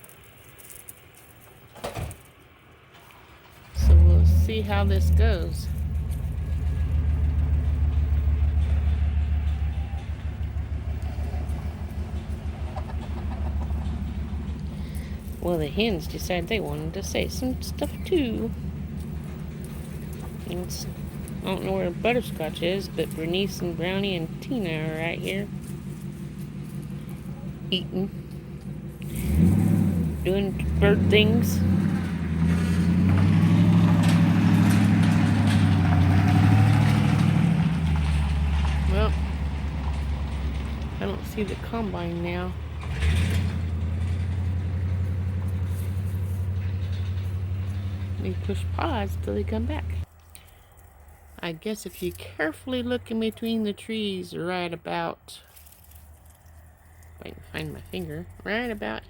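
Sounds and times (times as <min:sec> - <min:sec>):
machinery engine rumble: 0:00.0 - 0:59.0
hens clucking: 0:07.2 - 0:29.2.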